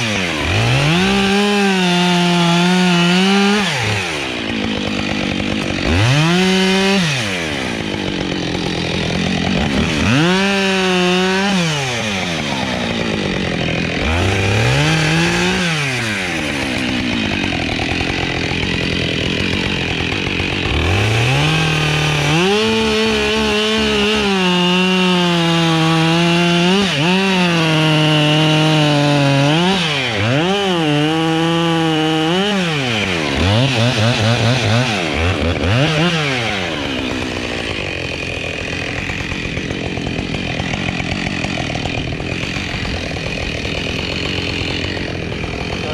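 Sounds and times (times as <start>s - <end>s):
chainsaw revving and cutting: 0.0s - 45.9s.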